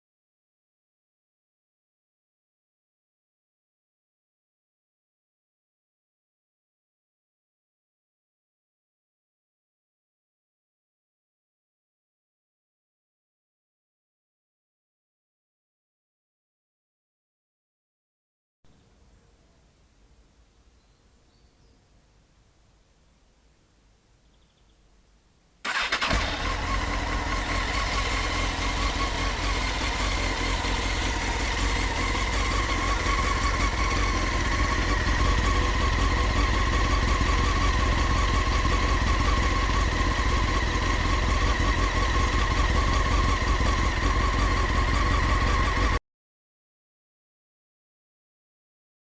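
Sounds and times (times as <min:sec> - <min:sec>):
motorcycle engine idling: 0:25.7 - 0:46.0.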